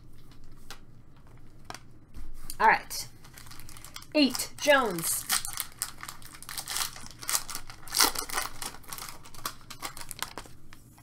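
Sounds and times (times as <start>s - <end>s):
wrapper tearing and crinkling: 3.2s - 11.0s.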